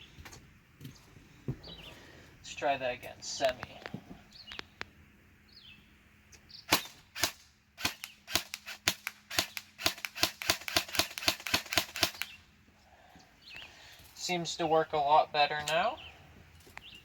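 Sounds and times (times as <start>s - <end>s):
airsoft gun shots: 6.7s - 12.4s.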